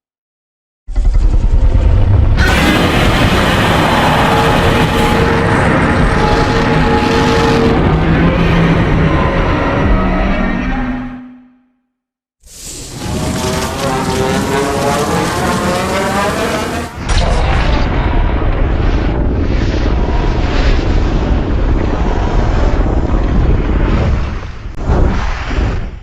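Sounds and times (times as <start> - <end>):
deep rumbling blast: 0.9 - 10.6, 12.5 - 26.0
monster roar: 1.5 - 11.1, 12.9 - 18.6.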